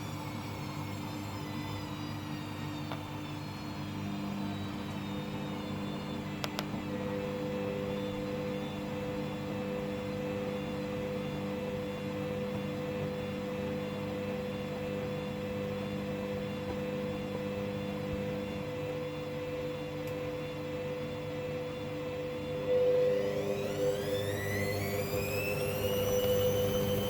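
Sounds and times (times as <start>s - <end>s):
washing machine spinning: 0.0s - 27.0s.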